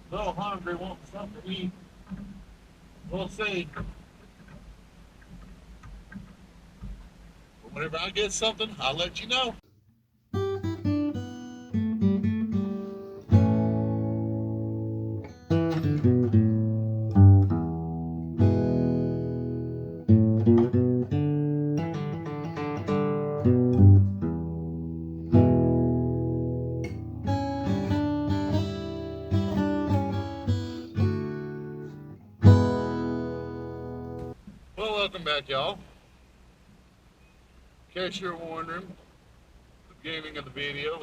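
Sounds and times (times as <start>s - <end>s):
acoustic guitar playing: 10.3s - 34.4s.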